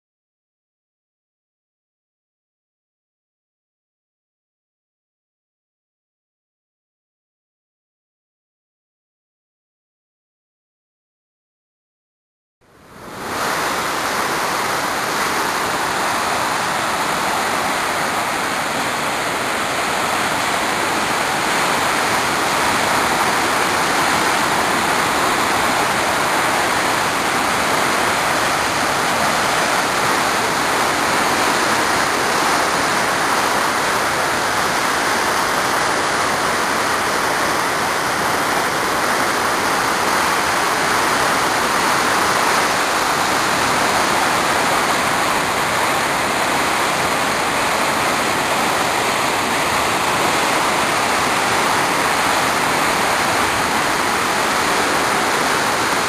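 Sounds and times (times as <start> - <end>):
waterfall roaring: 12.7 - 56.0.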